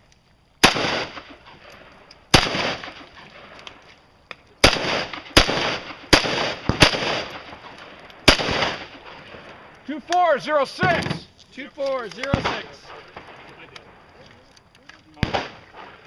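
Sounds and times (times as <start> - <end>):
gunshots with echo: 0.6 - 1.3, 2.3 - 3.1, 4.6 - 7.6, 8.2 - 9.1.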